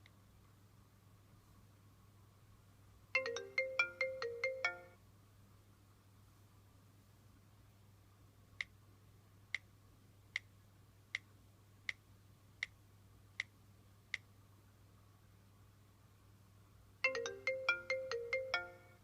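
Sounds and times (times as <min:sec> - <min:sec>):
ringtone: 0:03.2 - 0:05.0, 0:17.0 - 0:19.0.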